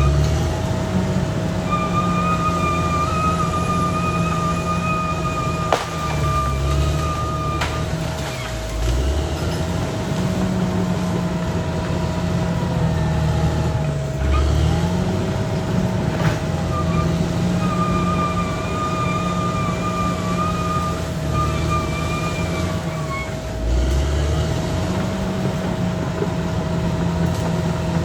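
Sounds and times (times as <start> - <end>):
wavering high-pitched squeal: 0.0 - 8.9, 16.3 - 23.6
bulldozer diesel engine running: 0.0 - 28.0.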